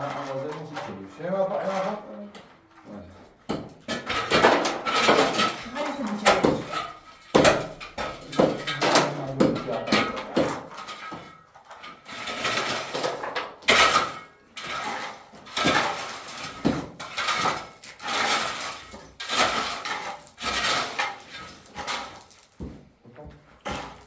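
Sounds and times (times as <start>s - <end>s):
metallic clinks and scrapes: 4.0s - 22.6s.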